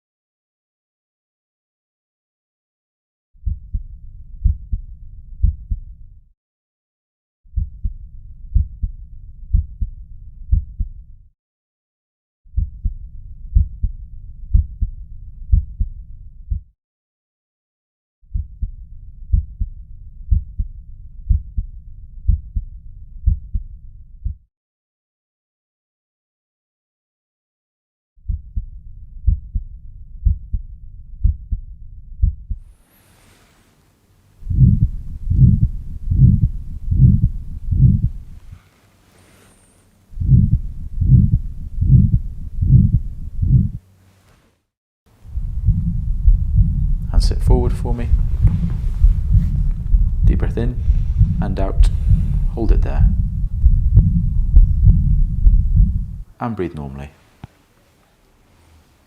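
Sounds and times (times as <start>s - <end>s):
heartbeat through stethoscope: 3.4s - 6.0s, 7.5s - 11.1s, 12.5s - 16.7s, 18.3s - 24.4s, 28.2s - 32.8s, 34.4s - 38.6s, 40.1s - 43.8s, 45.2s - 56.3s
low heart murmur: 3.4s - 6.0s, 7.6s - 11.1s, 12.6s - 16.6s, 18.3s - 20.7s, 21.3s - 21.7s, 22.3s - 24.4s, 28.3s - 29.6s, 30.2s - 32.7s, 34.4s - 38.6s, 40.2s - 43.8s, 45.2s - 56.3s
heart murmur rushing: 34.4s - 38.6s, 40.2s - 43.8s, 45.3s - 56.3s.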